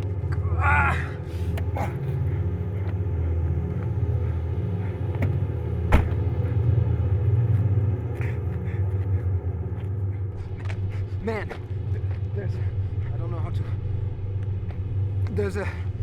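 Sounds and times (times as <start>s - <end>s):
car engine rumbling: 1.6s - 7.5s.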